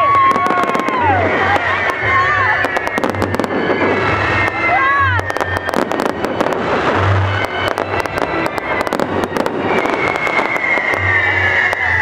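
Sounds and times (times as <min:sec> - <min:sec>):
fireworks bursting and crackling: 0:00.0 - 0:12.0
high falling whistle: 0:07.3 - 0:12.0.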